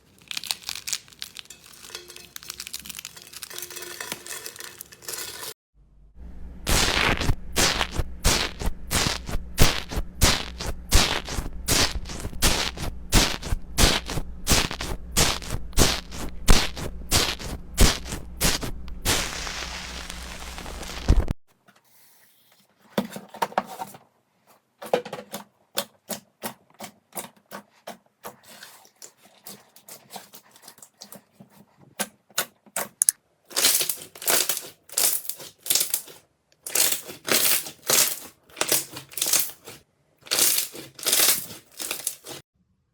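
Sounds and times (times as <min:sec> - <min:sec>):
crunchy slime crackling and popping: 0:00.0 - 0:05.2, 0:06.7 - 0:21.3, 0:33.5 - 0:42.4.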